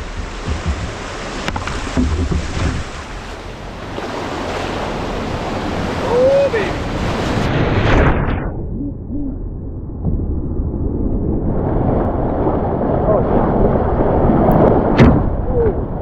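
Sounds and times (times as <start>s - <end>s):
whitewater rushing: 0.0s - 7.6s.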